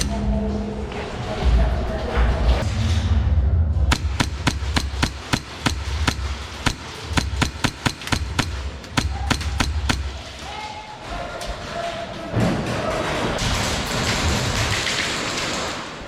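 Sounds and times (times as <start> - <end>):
low rumble: 0.0 - 7.5
airsoft gun shots: 3.9 - 10.4.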